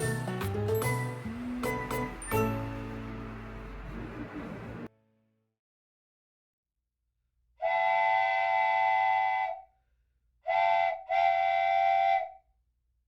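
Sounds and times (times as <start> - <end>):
train horn blasts: 7.6 - 9.6, 10.5 - 12.3.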